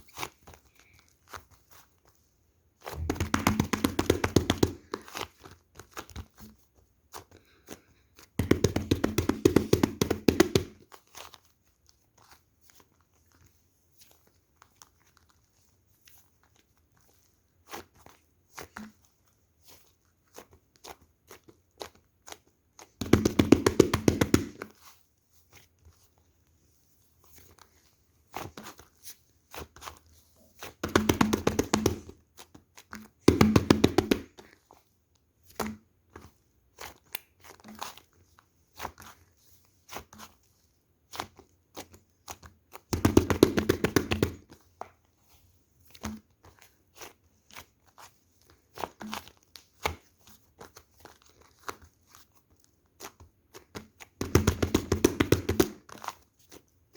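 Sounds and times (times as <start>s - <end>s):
material being crumpled by hand: 0.0s - 56.9s.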